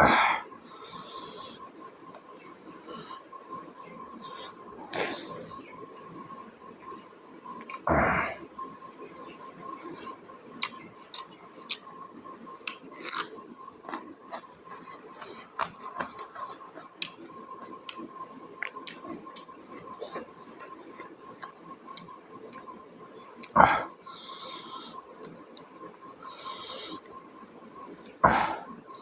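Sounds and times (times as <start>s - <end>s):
faint steady hum: 0.0s - 29.0s
wet chewing and mouth clicks: 1.8s - 7.8s, 9.6s - 23.6s, 24.9s - 26.1s.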